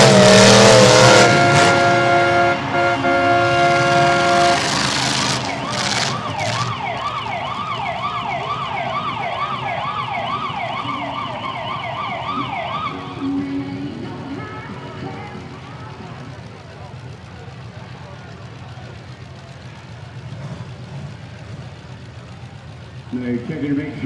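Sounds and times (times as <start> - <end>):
horn sounding: 0.0 - 7.8
emergency siren yelping: 3.0 - 13.2.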